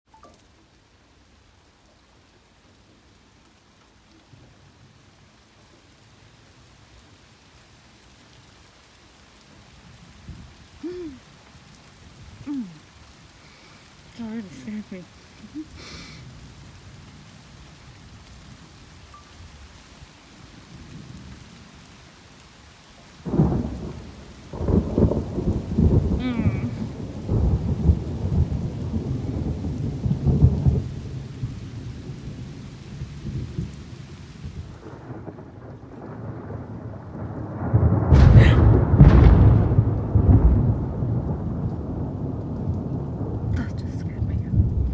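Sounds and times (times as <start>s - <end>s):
rain hissing: 0.1s - 44.9s
thunderclap rumbling: 23.2s - 44.9s.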